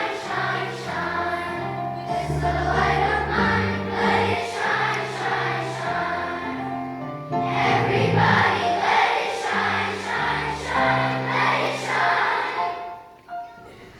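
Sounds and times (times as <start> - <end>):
choir singing held chords: 0.0 - 13.2.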